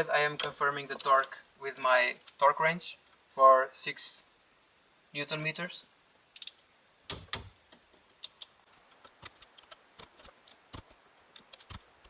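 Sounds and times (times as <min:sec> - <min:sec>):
torque wrench clicks and taps: 0:06.4 - 0:07.5, 0:08.2 - 0:08.5.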